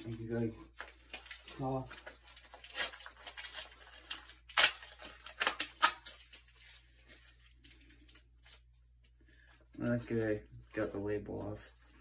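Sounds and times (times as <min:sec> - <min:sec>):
label being peeled and torn: 0:00.0 - 0:08.9.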